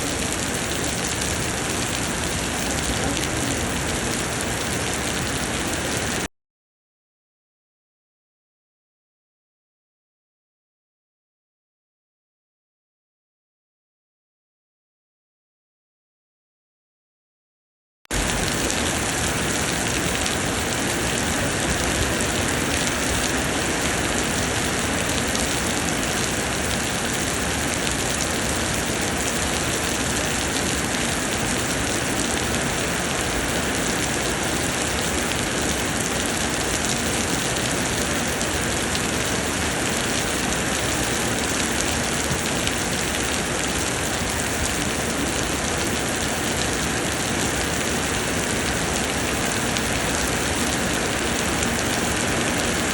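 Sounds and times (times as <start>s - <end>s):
heavy rain hiss: 0.0s - 6.3s, 18.1s - 52.9s.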